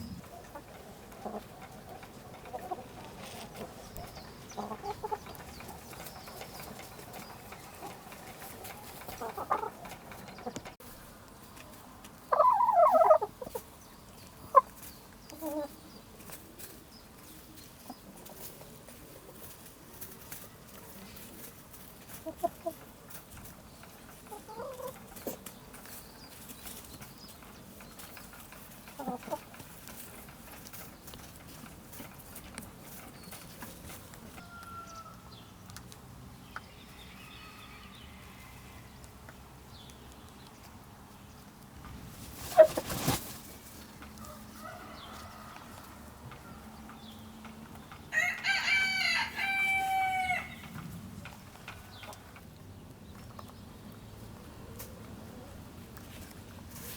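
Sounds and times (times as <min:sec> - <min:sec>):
chickens clucking: 0:00.0 - 0:56.9
rooster crowing: 0:34.4 - 0:35.3, 0:44.2 - 0:46.1, 0:48.1 - 0:50.7.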